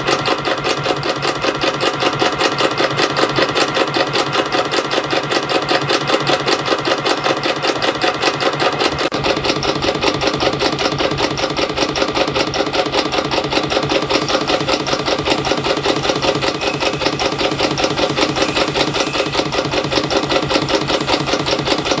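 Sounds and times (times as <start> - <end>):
spring coiling machine clatter: 0.0 - 22.0.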